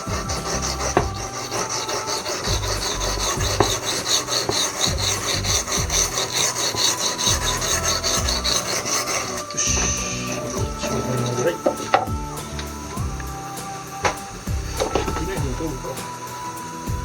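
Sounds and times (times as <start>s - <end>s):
knife scraping on whetstone: 0.0s - 13.1s, 14.0s - 16.3s.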